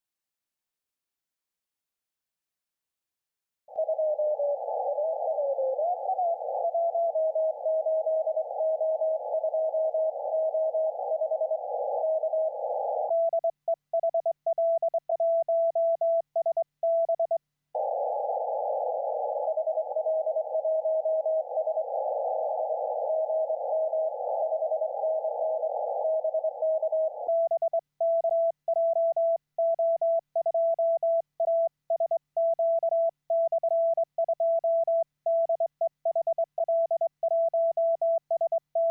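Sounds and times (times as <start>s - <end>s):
receiver hiss: 3.8s - 13.2s, 17.8s - 27.4s
morse code beeps: 13.1s - 17.4s, 23.1s - 38.9s.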